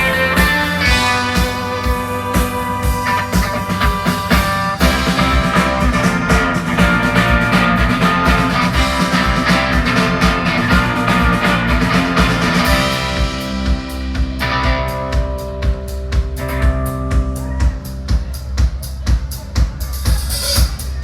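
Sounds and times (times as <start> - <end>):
live rock band playing: 0.0 - 21.0.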